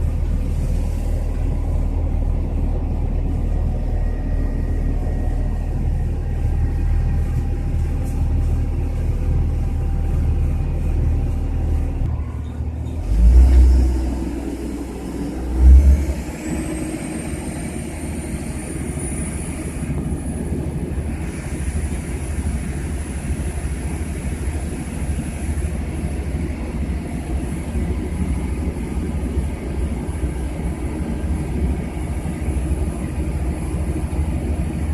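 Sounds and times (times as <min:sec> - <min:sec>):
high whine rising in pitch: 0:00.0 - 0:22.4
rail vehicle rumbling on track: 0:00.0 - 0:34.9.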